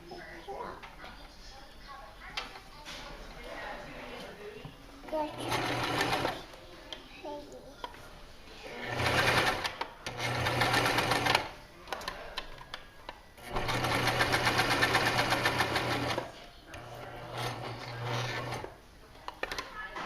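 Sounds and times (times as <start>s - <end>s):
sewing machine stitching: 5.3s - 6.4s, 8.7s - 11.5s, 13.4s - 16.3s, 17.1s - 18.7s.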